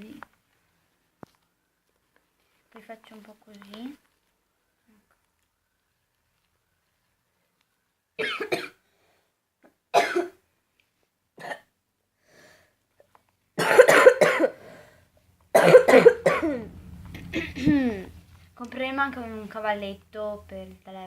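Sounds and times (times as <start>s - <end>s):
person coughing: 8.2s - 8.8s, 9.9s - 10.4s, 13.6s - 14.6s, 15.5s - 16.7s.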